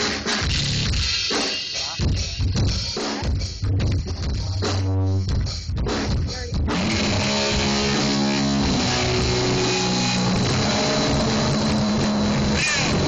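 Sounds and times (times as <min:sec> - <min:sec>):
drum hits: 0:00.0 - 0:13.0
live rock band: 0:00.0 - 0:13.0
electric guitar: 0:06.6 - 0:13.0.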